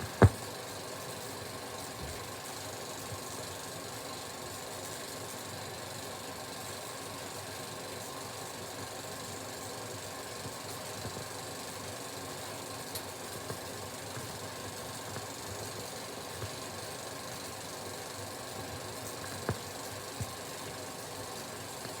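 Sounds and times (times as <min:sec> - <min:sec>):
film pops: 0:00.0 - 0:00.4.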